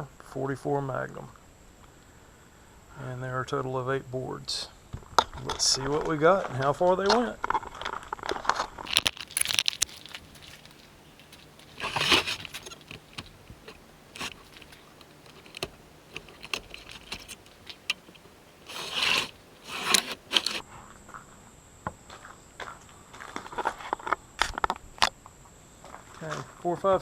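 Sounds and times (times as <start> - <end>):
boards scraping and rattling: 8.9 - 20.6.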